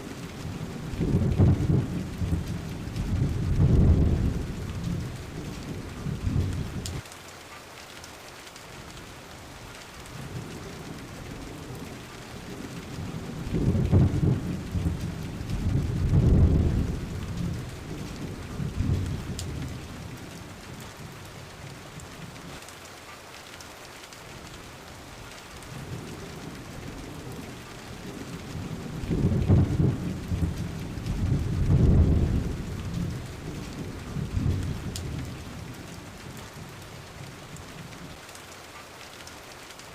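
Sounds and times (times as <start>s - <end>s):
steady rain falling: 0.0s - 39.9s
thunder rumbling: 0.4s - 7.0s, 10.2s - 21.2s, 25.6s - 38.1s.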